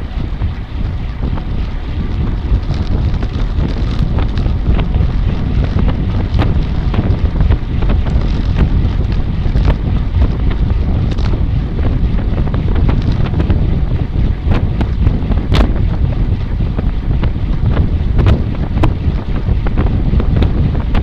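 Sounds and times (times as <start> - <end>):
wind buffeting microphone: 0.0 - 21.0.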